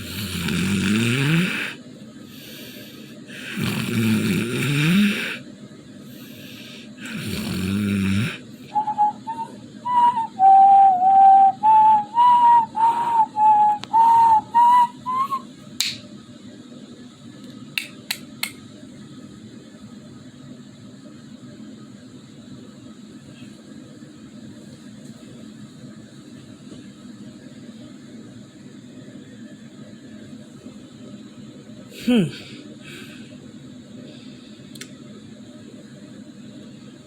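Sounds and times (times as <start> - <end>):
person snoring loudly: 0.0 - 5.4, 6.1 - 9.4, 32.0 - 33.2
whistled notes: 8.7 - 15.5.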